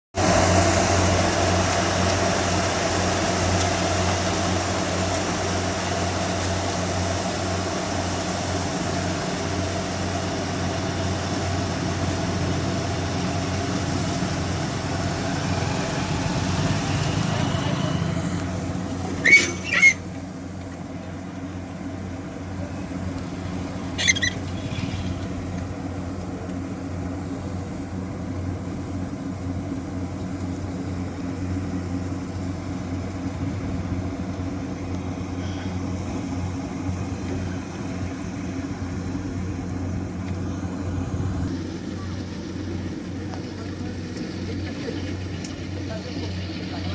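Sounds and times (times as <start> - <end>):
combine harvester engine droning: 0.2 - 46.9
high-pitched squeaks: 19.0 - 20.2, 23.8 - 25.3.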